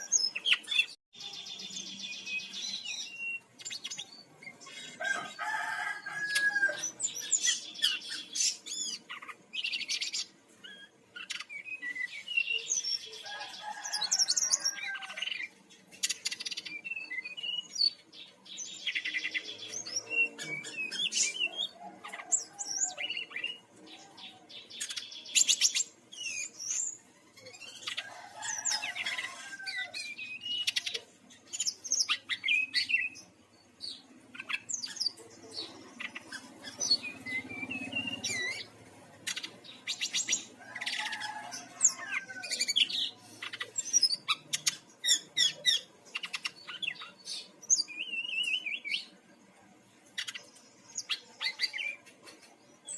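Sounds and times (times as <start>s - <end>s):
bird singing trills: 0.0s - 49.2s.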